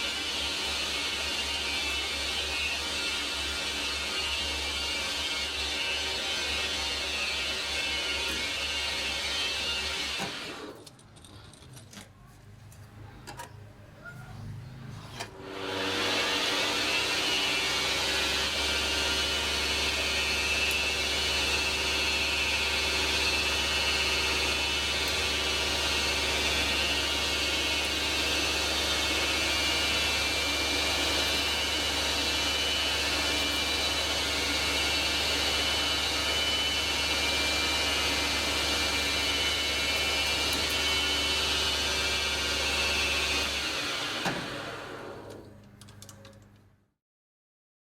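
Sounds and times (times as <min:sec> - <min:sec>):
lathe motor running: 0:00.0 - 0:10.8, 0:15.4 - 0:45.4.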